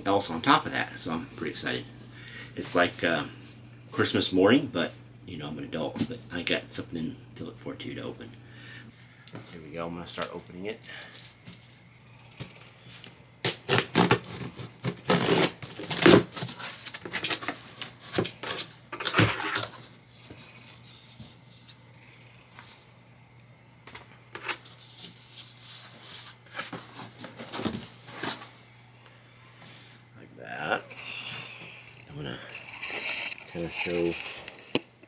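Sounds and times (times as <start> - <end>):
cardboard box being unpacked: 13.4 - 19.9.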